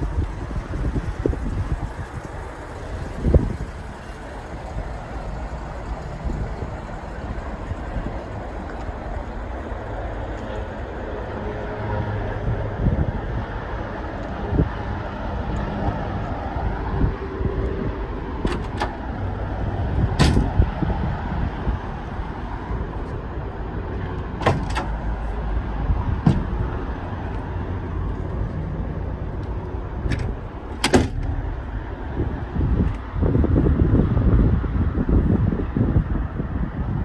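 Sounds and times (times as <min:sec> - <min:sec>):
sharp clicks and knocks: 0:24.4 - 0:25.0, 0:29.4 - 0:31.7.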